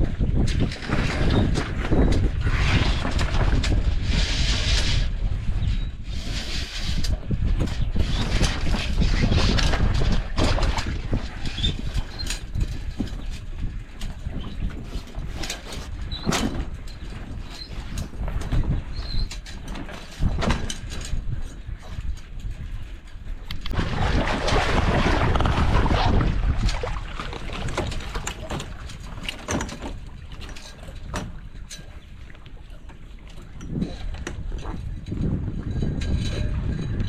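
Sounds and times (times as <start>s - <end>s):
rigging clicks and creaks: 0.0s - 37.0s
wind buffeting microphone: 0.0s - 37.0s
water rushing and splashing: 23.6s - 28.6s.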